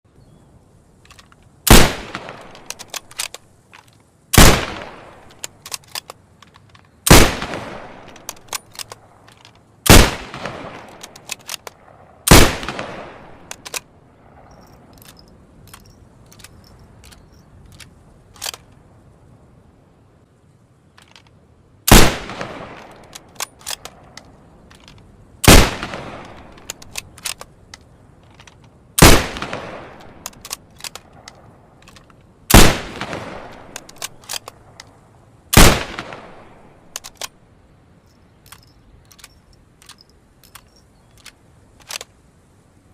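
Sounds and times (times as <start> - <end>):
light clicks and clatter: 1.0 - 1.6, 2.3 - 4.2, 5.2 - 7.0, 8.0 - 9.7, 13.4 - 18.9, 20.9 - 21.4, 22.8 - 25.2, 26.2 - 28.8, 30.0 - 32.4, 33.5 - 35.0, 36.9 - 37.4, 38.0 - 42.6
rifle shots with echo: 1.7 - 3.0, 4.3 - 5.3, 7.1 - 9.0, 9.9 - 13.7, 21.9 - 24.1, 25.4 - 27.0, 29.0 - 30.3, 32.5 - 34.4, 35.5 - 37.0.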